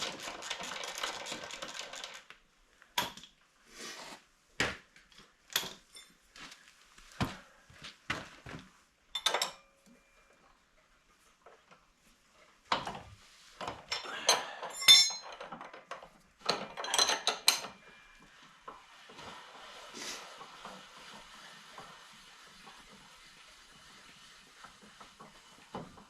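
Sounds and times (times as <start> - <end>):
metal tools clinking and clattering: 9.2 - 9.7, 13.9 - 15.9, 16.5 - 17.8.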